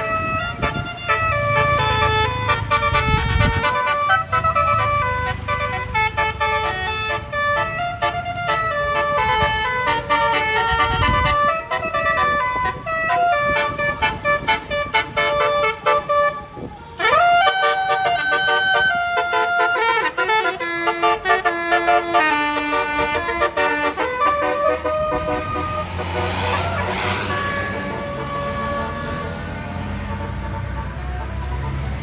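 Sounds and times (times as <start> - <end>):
multi-tone bus horn tune: 0.0 - 32.0
rushing noise: 24.2 - 32.0.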